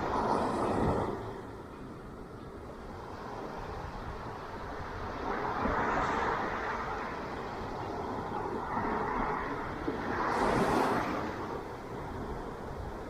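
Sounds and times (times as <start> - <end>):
ocean surf washing on beach: 0.0 - 13.0.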